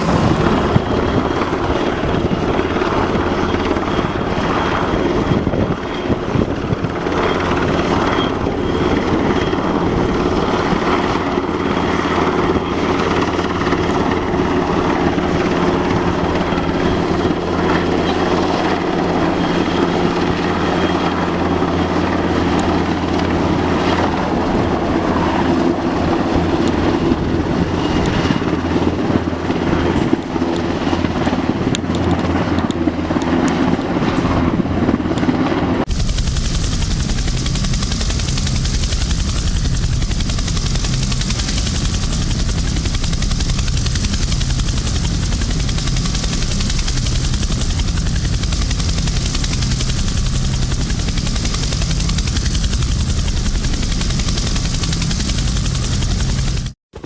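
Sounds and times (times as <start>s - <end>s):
aircraft engine droning: 0.0s - 57.0s.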